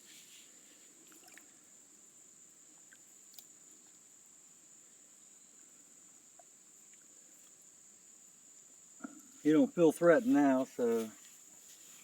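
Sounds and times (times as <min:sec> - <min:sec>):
faint click: 0:03.3 - 0:04.0.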